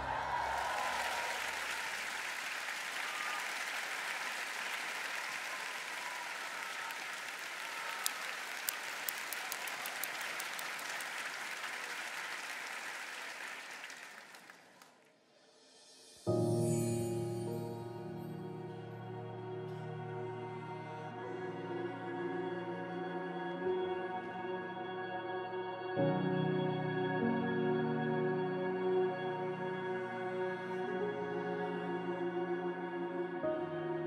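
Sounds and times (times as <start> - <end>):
audience applauding: 0.0 - 15.1.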